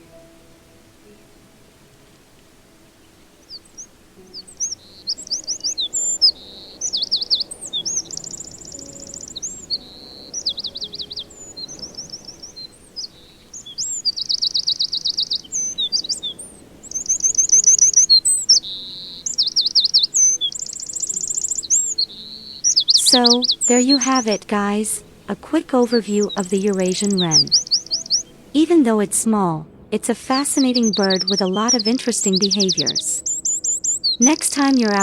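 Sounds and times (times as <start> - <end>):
wren singing: 3.0 - 35.0.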